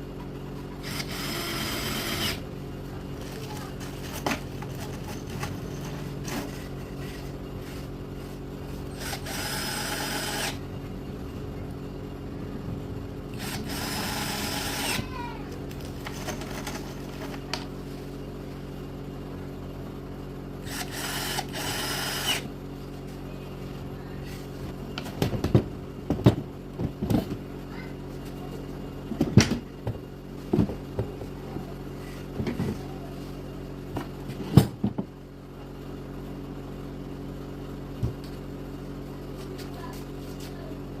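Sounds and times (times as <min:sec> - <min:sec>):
steady low hum: 0:00.0 - 0:41.0
cordless drill driving screws: 0:00.8 - 0:02.4, 0:09.0 - 0:10.6, 0:13.4 - 0:15.0, 0:20.6 - 0:22.5.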